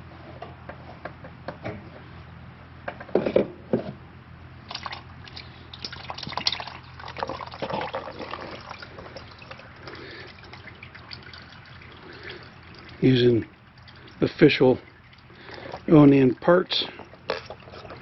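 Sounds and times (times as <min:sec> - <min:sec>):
oil dripping into a drain pan: 0:04.7 - 0:18.0.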